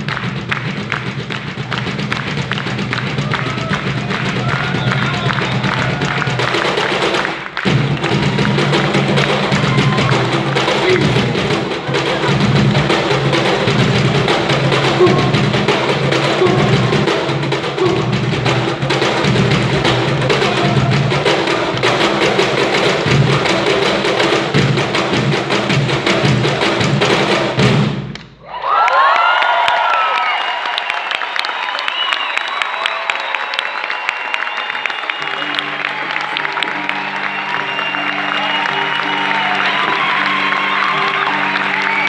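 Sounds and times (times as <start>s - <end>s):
box drum strokes: 0.0s - 28.2s.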